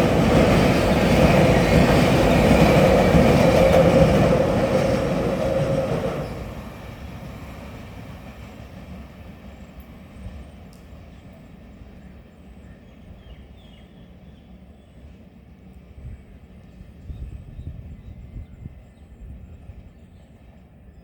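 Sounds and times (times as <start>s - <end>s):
train wheels rolling on rails: 0.0s - 12.1s.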